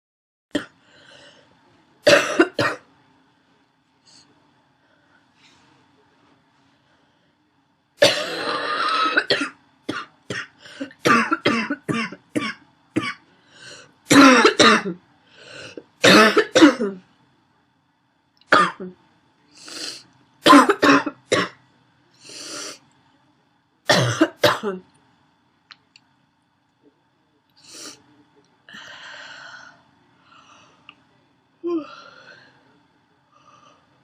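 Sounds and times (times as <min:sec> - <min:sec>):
woman coughing harshly: 0:02.0 - 0:02.8, 0:08.0 - 0:13.2, 0:14.1 - 0:15.0, 0:16.0 - 0:17.0, 0:18.6 - 0:18.9, 0:20.4 - 0:21.6, 0:23.9 - 0:24.8
wheezy breaths: 0:13.3 - 0:14.0, 0:15.2 - 0:15.9, 0:28.7 - 0:30.9.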